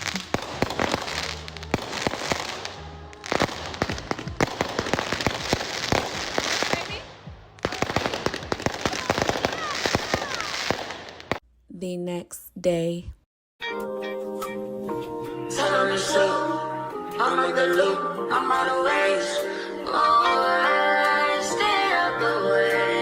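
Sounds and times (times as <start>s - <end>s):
music playing: 0.0s - 10.0s, 13.6s - 23.0s
fireworks popping and crackling: 0.0s - 11.4s.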